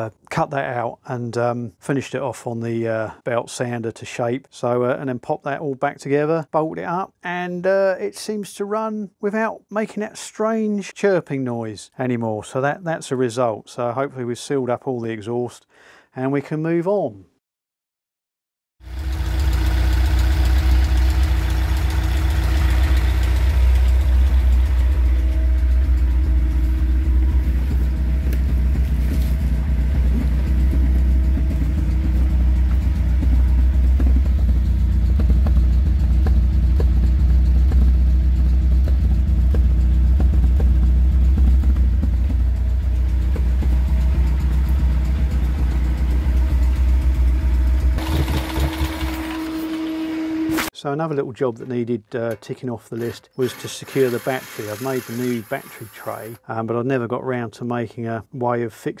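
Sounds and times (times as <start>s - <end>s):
car engine idling: 18.8s - 49.3s.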